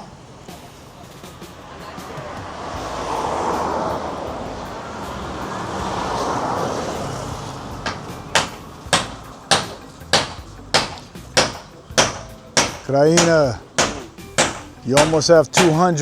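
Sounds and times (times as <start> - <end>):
rushing noise: 0.0 - 13.9
hammer striking timber: 5.0 - 16.0.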